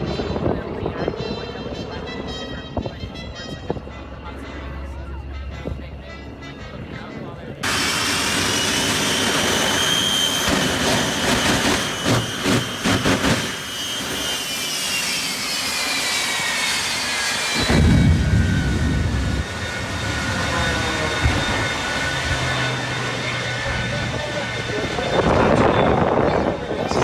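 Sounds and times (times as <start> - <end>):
jet engine whine: 7.5 - 27.0
loud low rumble: 17.5 - 27.0.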